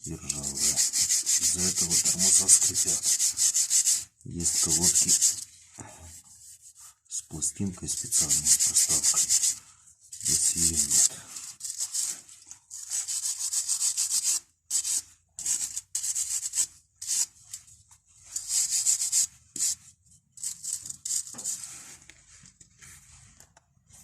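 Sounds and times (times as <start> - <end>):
wire brush scrubbing metal: 0.2 - 5.5, 7.9 - 17.6, 18.2 - 19.8.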